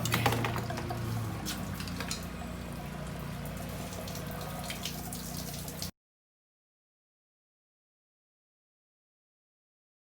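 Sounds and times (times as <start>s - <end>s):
liquid dripping and trickling: 0.0s - 5.9s.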